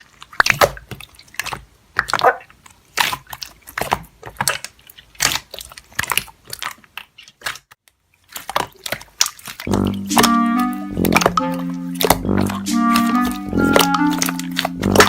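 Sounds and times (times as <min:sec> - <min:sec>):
slime squishing and clicking: 0:02.9 - 0:07.7, 0:08.3 - 0:15.0.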